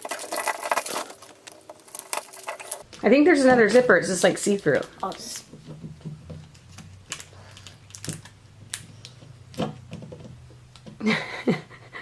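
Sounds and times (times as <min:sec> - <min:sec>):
plastic packaging crinkling: 0:00.0 - 0:03.0, 0:04.4 - 0:05.6, 0:06.4 - 0:09.6.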